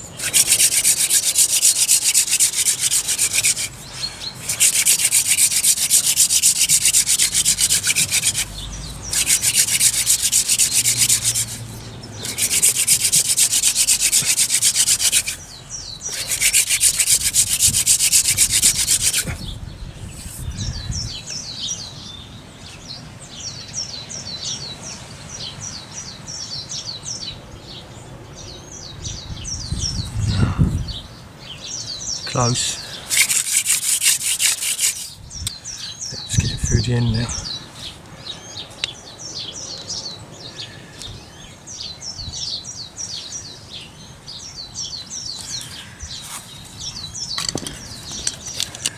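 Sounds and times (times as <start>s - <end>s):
wooden spindle friction grinding: 0.0s - 20.6s, 32.6s - 35.2s, 45.4s - 48.9s
birds chirping: 0.0s - 48.9s.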